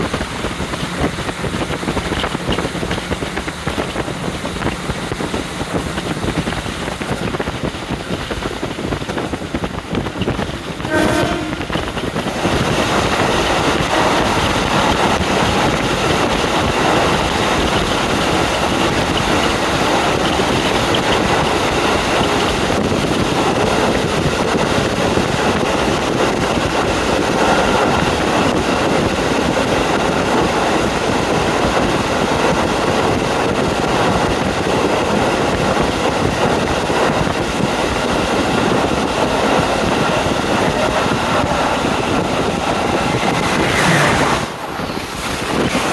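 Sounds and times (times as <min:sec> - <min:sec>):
train running noise: 0:00.0 - 0:45.9
wind rushing through window: 0:00.0 - 0:45.9.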